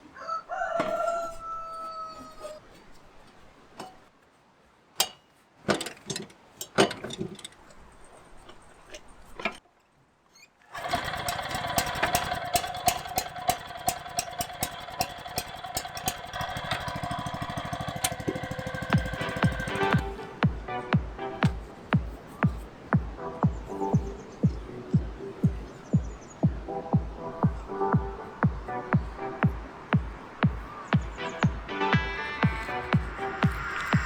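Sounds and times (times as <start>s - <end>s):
small cultivator engine running: 10.8s - 21.8s, 30.6s - 34.0s
sharp knocks and clacks: 11.8s - 27.6s.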